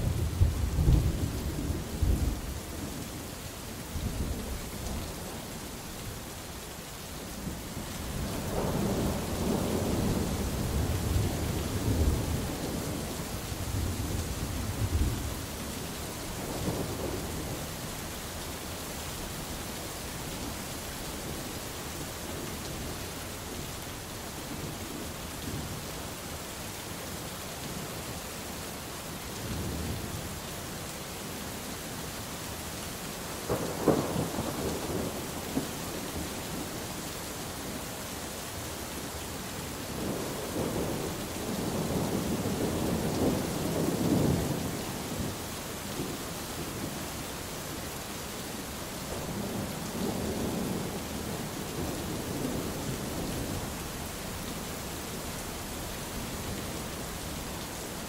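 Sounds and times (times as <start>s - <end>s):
steady rain hissing: 0.0s - 58.0s.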